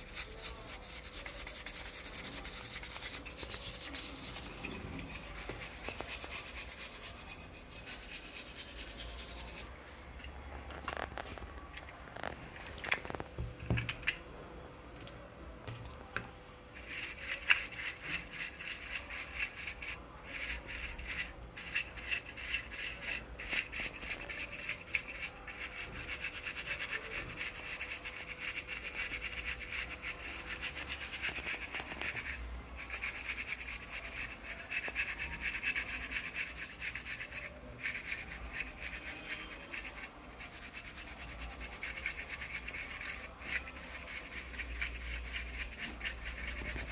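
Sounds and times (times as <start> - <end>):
fast scrubbing strokes: 0.0 - 9.6.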